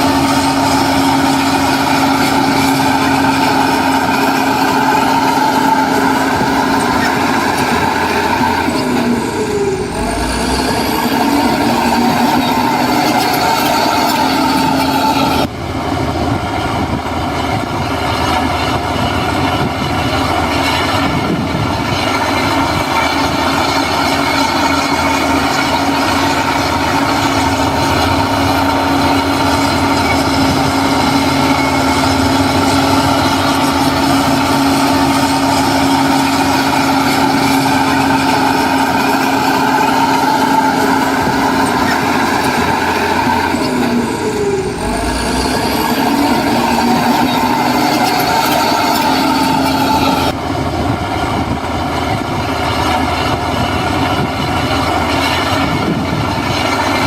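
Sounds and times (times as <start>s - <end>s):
heavy diesel machinery running: 0.0s - 57.0s.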